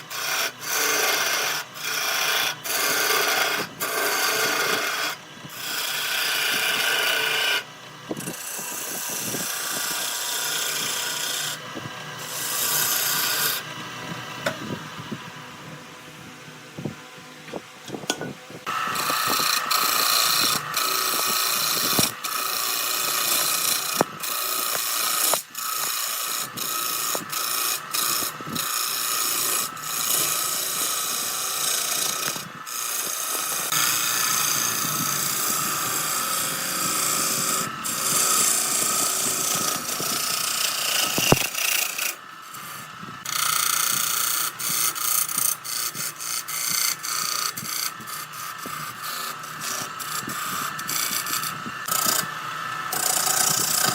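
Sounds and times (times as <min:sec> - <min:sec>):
lathe motor hum: 0:00.0 - 0:53.9
lathe tool scraping wood: 0:00.0 - 0:53.9.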